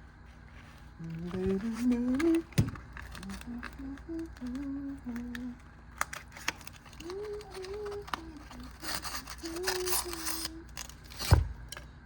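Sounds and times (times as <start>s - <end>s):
man humming: 1.0s - 5.6s.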